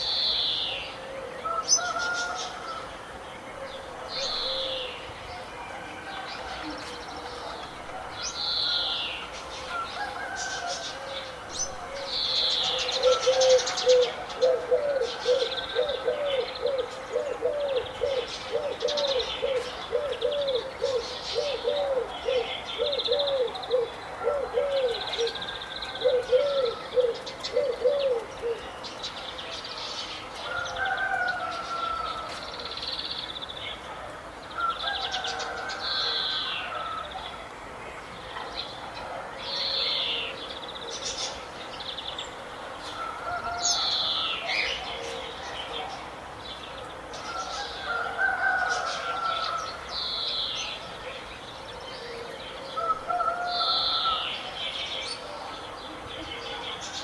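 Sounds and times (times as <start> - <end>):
low repeated bird call: 0.0 - 29.1
birds chirping and twittering: 0.0 - 57.0.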